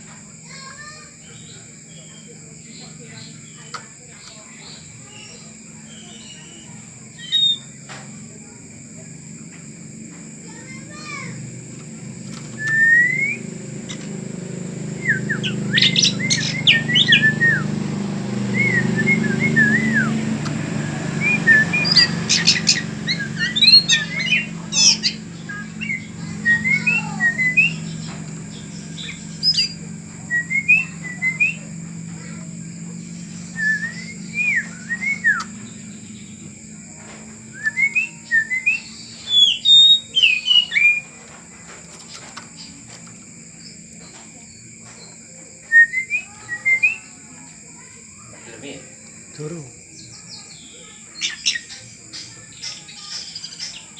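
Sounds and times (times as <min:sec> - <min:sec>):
bird singing whistled notes: 0:00.4 - 0:08.3, 0:10.4 - 0:41.2, 0:42.0 - 0:47.5, 0:48.6 - 0:53.9
low steady hum: 0:01.2 - 0:48.3.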